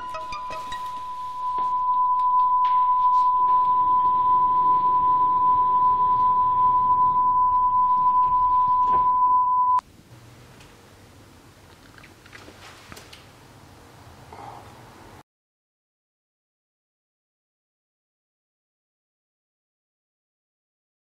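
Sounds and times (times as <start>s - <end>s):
steady electronic beep: 0.0s - 9.8s.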